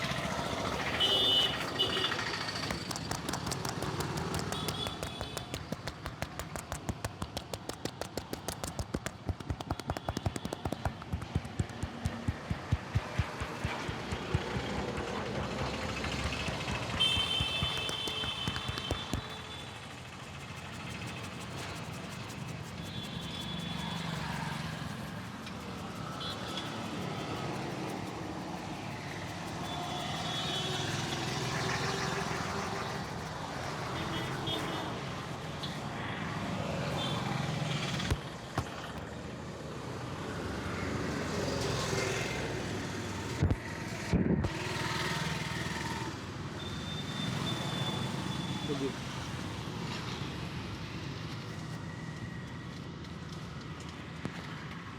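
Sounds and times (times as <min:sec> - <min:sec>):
road traffic: 0:00.0 - 0:54.9
sharp smacks: 0:02.6 - 0:19.7.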